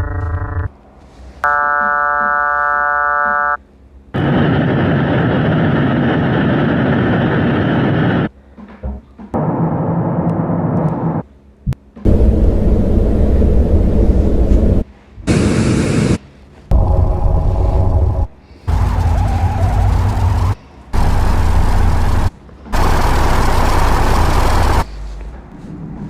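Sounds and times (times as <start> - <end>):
buzzing electronic tone: 0.0 - 0.7, 1.4 - 3.6
loud even rumbling noise: 4.1 - 8.3, 9.3 - 26.0.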